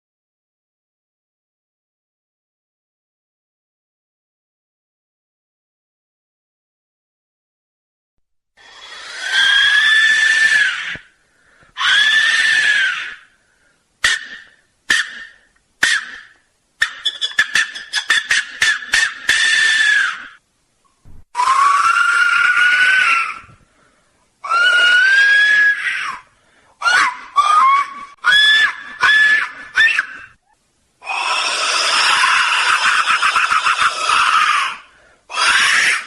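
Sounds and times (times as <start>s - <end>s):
clay whistle shrieking blasts: 8.8s - 11.0s, 11.8s - 13.3s, 18.7s - 20.4s, 21.4s - 23.6s, 24.4s - 26.2s, 26.8s - 30.4s.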